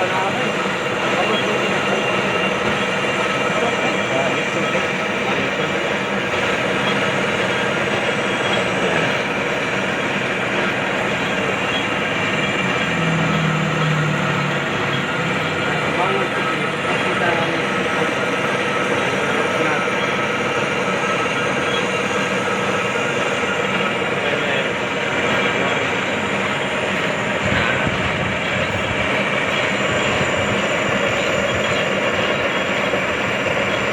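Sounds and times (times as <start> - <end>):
metalworking machine drone: 0.0 - 33.9.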